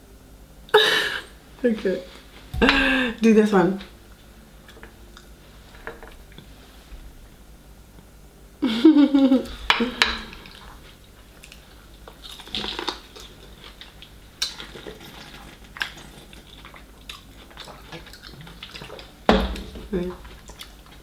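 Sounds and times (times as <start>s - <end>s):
dishes and cutlery clinking: 9.6s - 10.6s.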